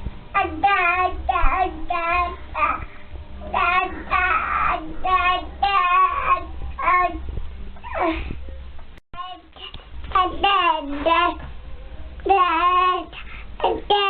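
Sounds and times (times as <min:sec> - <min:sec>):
baby babbling: 0:12.3 - 0:14.0.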